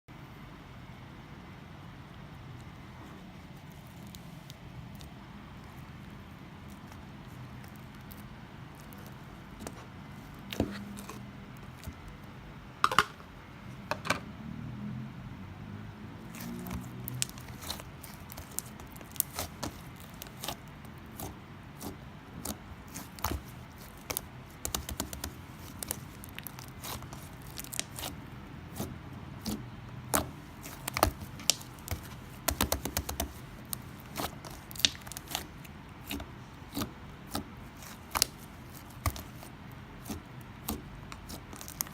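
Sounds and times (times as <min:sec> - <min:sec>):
slime squished by hand: 0:16.2 - 0:41.9.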